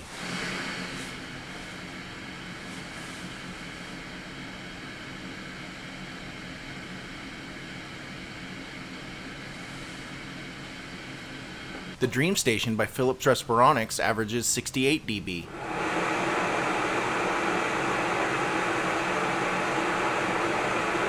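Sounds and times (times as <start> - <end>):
rush of air from machine: 0.0 - 3.9, 15.5 - 21.0.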